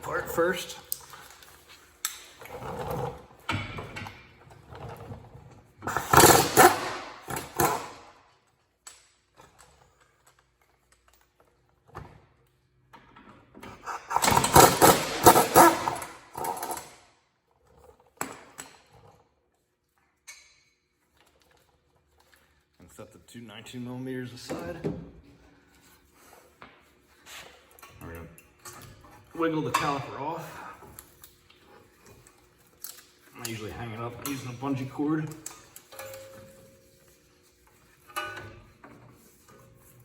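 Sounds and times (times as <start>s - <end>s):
impact wrench hammering: 5.9s - 8.0s, 14.1s - 16.8s.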